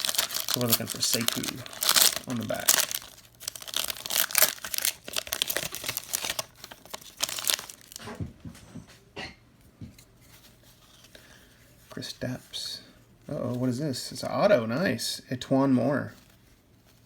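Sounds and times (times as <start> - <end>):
cards being handled: 0.0 - 8.0
plastic wrapper crinkling and tearing: 0.0 - 8.1.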